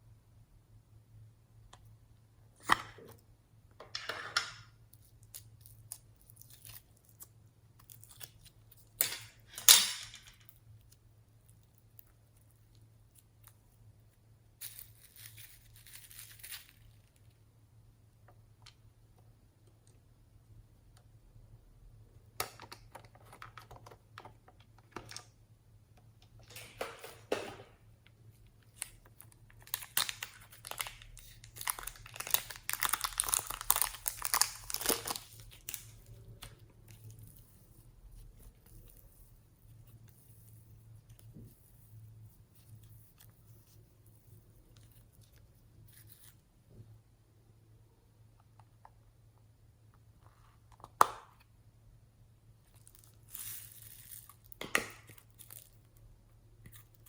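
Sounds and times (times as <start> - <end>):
plastic packaging crinkling and tearing: 4.9 - 11.6, 14.6 - 17.4, 28.6 - 39.0, 52.6 - 55.9.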